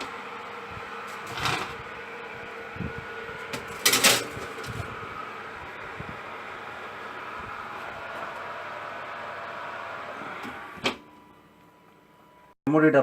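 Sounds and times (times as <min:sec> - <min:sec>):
oven fan humming: 0:00.0 - 0:13.0
baking tray clattering: 0:03.5 - 0:04.8.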